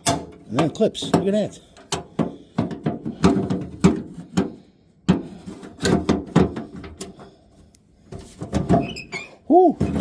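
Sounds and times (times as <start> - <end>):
metallic latch clicks and clunks: 0.0 - 2.2.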